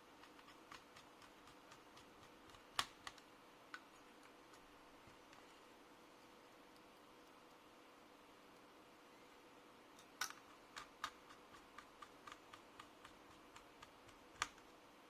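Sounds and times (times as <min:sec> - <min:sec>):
small laptop parts clicking: 0:00.1 - 0:05.5, 0:10.0 - 0:14.7.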